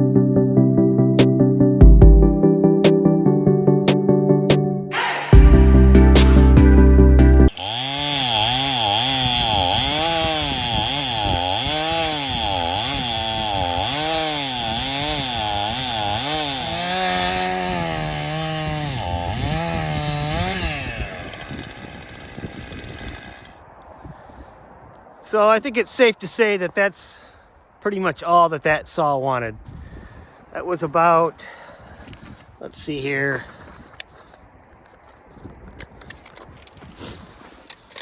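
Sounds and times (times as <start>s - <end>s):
loud music: 0.0s - 7.5s
chainsaw cutting wood: 7.4s - 23.6s.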